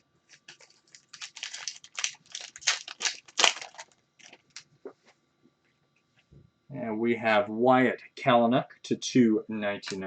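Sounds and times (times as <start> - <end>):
cards and plastic wrapping rustling: 0.3 - 4.7.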